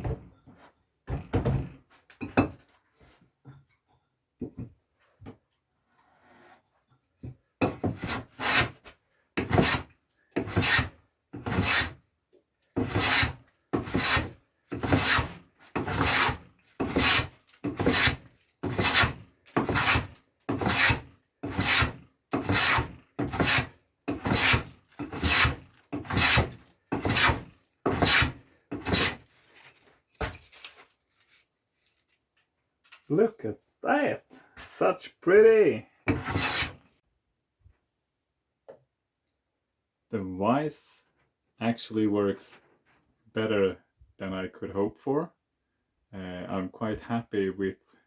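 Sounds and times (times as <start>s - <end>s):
hand tool scraping wood: 7.6s - 12.0s, 12.8s - 30.5s, 36.0s - 36.9s.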